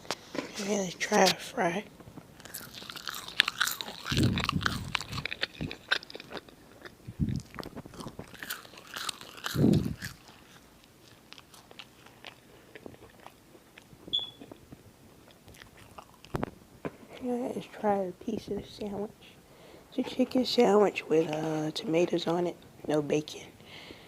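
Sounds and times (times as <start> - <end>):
chewing with wet mouth clicks: 2.4 - 14.6, 15.2 - 16.5.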